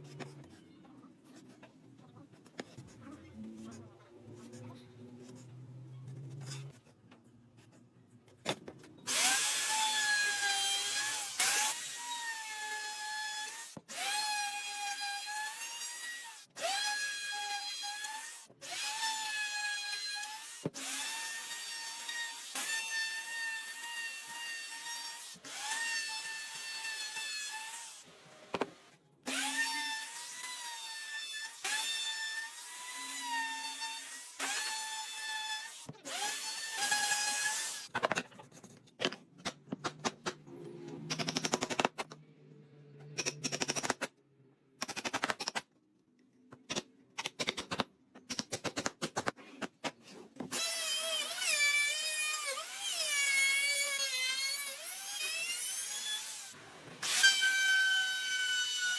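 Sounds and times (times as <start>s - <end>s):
sharp irregular clicks and knocks: 41.1s - 42.2s.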